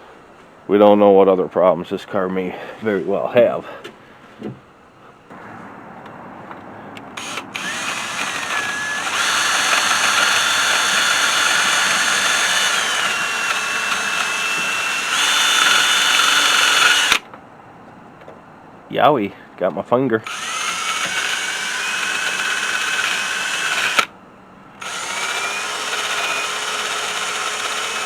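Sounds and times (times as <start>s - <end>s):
power tool motor whining: 7.0s - 17.2s, 20.2s - 24.1s, 24.8s - 28.0s.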